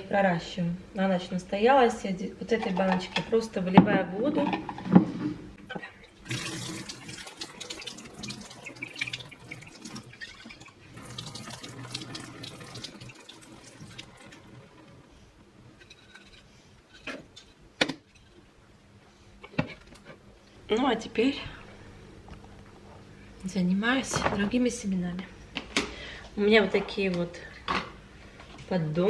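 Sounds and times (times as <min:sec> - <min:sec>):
water splashing into a sink: 0:06.2 - 0:14.7.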